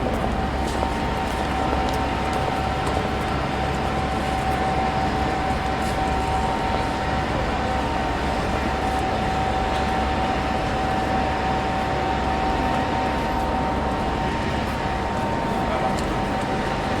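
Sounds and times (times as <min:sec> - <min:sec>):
constant high whine: 0:00.0 - 0:17.0
train rumbling at platform: 0:00.0 - 0:17.0.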